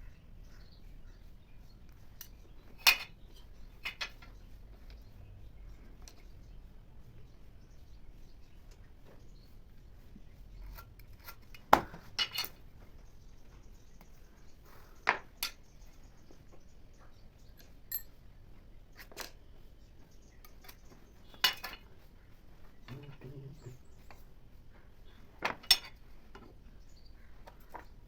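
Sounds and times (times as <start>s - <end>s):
hand tools knocking and clinking: 17.9s - 18.1s.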